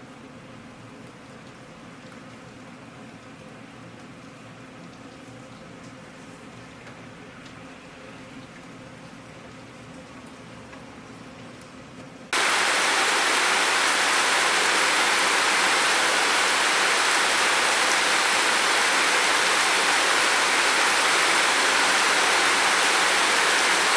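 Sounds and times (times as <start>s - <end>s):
heavy rainfall: 12.4s - 23.9s.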